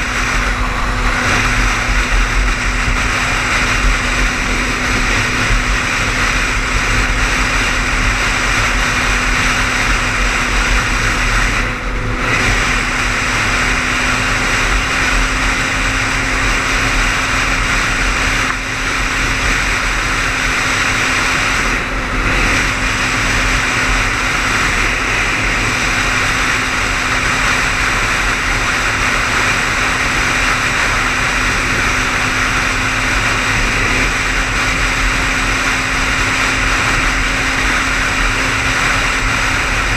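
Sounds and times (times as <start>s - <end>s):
tyre and wind noise: 0.0s - 39.9s.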